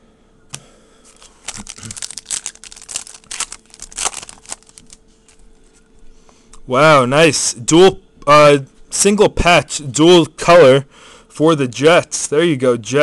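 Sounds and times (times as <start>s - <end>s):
plastic packaging crinkling: 1.1s - 5.8s.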